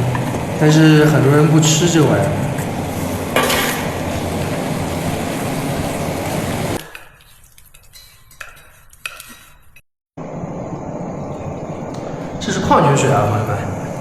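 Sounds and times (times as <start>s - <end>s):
food sizzling in a pan: 2.4s - 7.1s.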